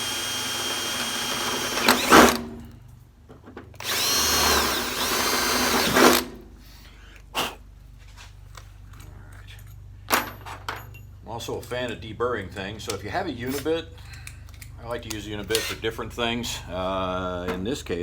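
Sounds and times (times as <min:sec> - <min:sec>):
power drill boring through metal: 0:00.0 - 0:02.5, 0:03.8 - 0:06.3.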